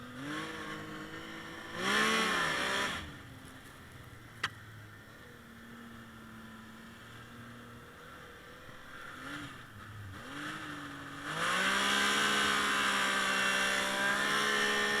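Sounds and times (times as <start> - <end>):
snowmobile engine revving: 0.0 - 3.3, 8.0 - 15.0.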